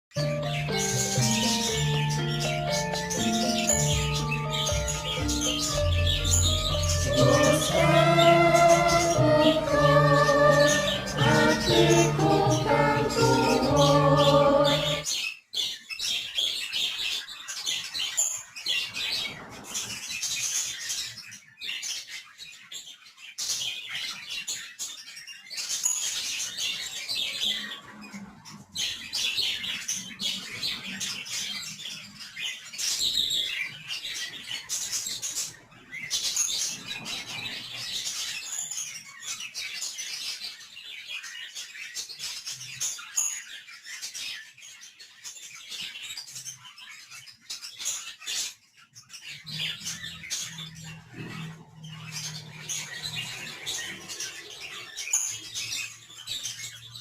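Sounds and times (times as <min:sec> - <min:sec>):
budgerigars chattering: 0:00.2 - 0:15.0, 0:49.2 - 0:57.0.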